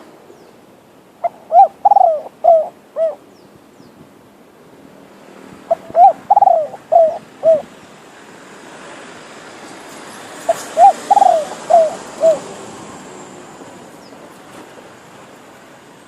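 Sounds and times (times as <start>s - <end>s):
dove cooing: 1.2s - 3.2s, 5.7s - 7.7s, 10.5s - 12.7s.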